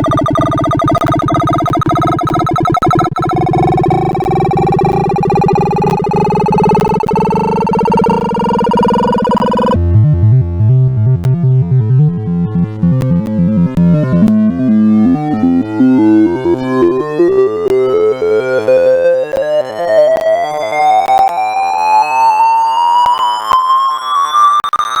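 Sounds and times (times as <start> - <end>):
computer-generated beeps: 0.0 - 9.8.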